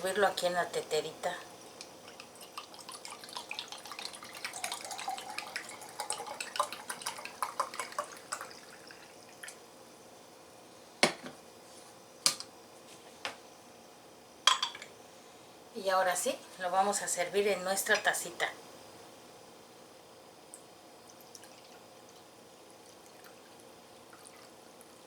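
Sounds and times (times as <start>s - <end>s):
tea pouring and dripping: 1.7s - 9.6s, 20.5s - 25.0s
cookware knocks: 14.5s - 14.9s.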